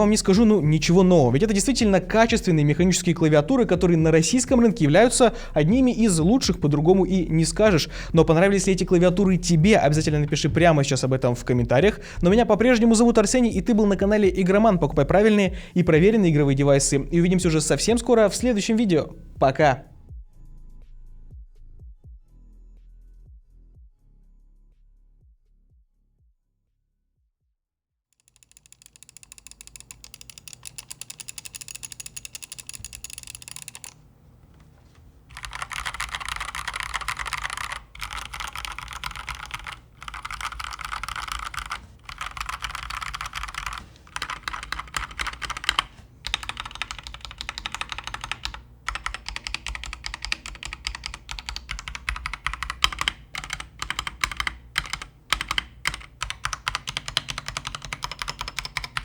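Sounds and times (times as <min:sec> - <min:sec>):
mechanical keyboard typing: 0:00.0 - 0:01.0, 0:28.2 - 0:59.0.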